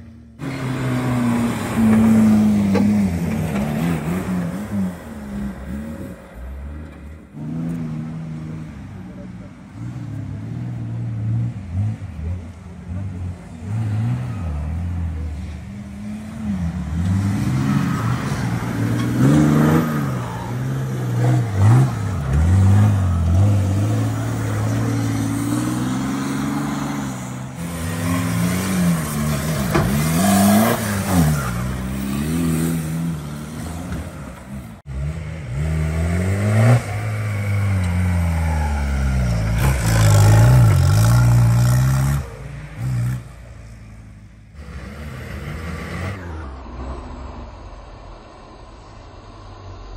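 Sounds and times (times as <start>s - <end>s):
off-road engine revving: 0.0s - 49.9s.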